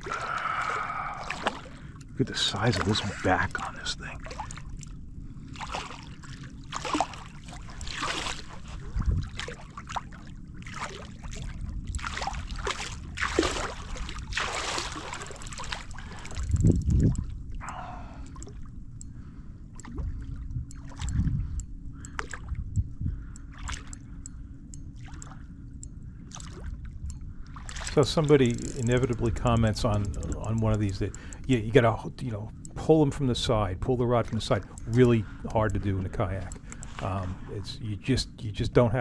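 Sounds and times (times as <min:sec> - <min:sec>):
water splashing around kayak: 0:00.0 - 0:18.6, 0:23.5 - 0:24.1, 0:27.5 - 0:31.4, 0:34.4 - 0:37.6.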